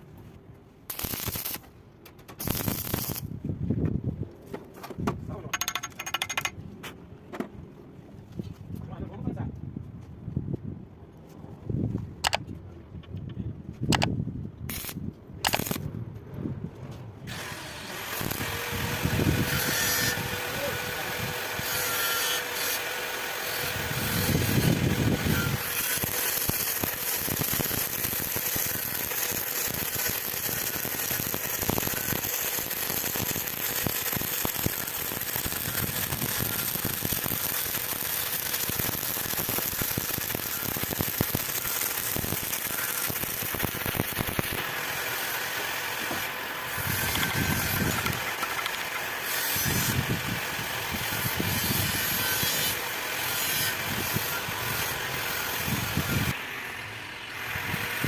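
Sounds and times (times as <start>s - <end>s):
welding arc crackling: 0.9s - 1.7s, 2.4s - 3.3s, 14.7s - 15.9s, 17.4s - 20.8s, 22.4s - 46.0s.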